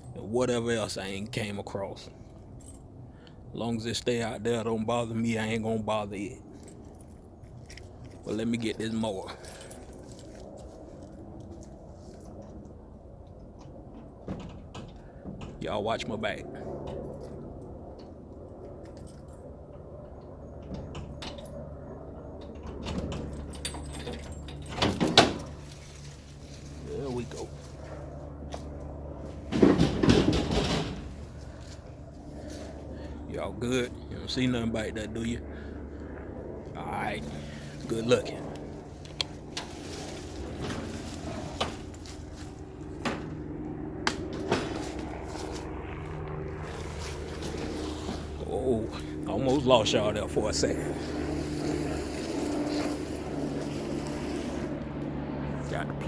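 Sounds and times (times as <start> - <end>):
steady low hum: 0.0 - 56.0
lawn mower engine running: 38.9 - 43.4.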